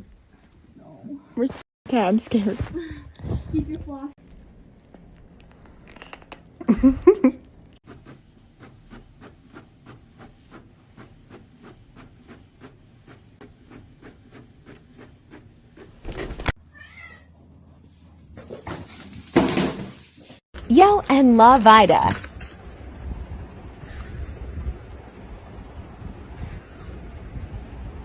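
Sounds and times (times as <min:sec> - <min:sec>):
cat meowing loudly: 0:16.7 - 0:17.3.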